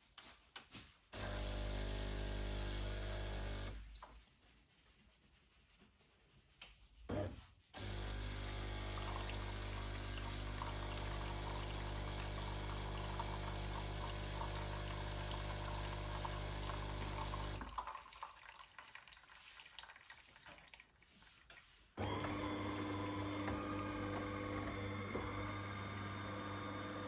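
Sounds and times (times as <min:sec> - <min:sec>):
coffee machine pump humming: 0:01.2 - 0:03.8, 0:07.8 - 0:17.9, 0:22.0 - 0:27.0
water flowing: 0:08.7 - 0:21.2.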